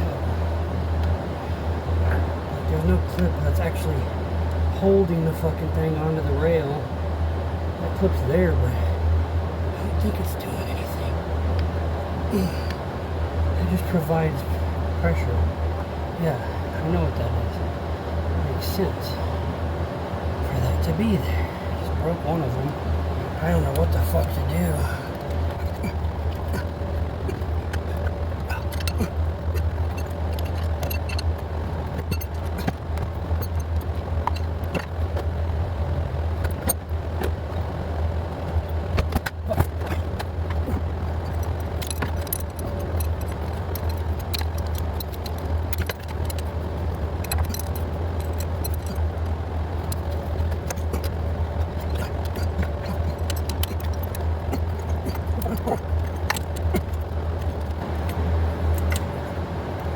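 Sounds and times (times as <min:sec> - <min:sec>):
steady low hum: 0:00.0 - 0:59.9
metallic clicks of hand tools: 0:49.9 - 0:59.1.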